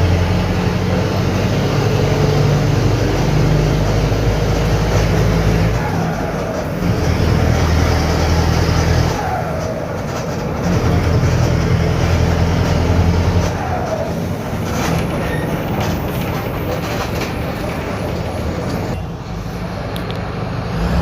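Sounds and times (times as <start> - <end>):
bus engine loud low drone: 0.0 - 21.0.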